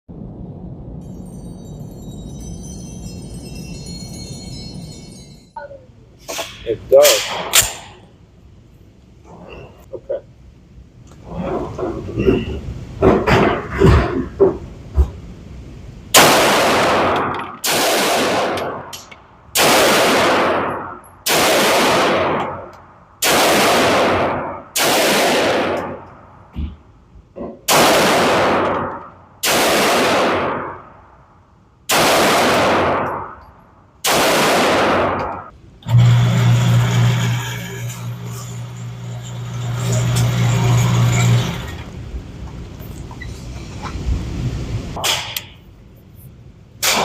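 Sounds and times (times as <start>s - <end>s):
steady low hum: 0.1s - 47.0s
gunshots with echo: 16.2s - 19.0s, 19.6s - 26.2s, 27.7s - 31.1s, 31.9s - 33.4s, 34.0s - 35.5s.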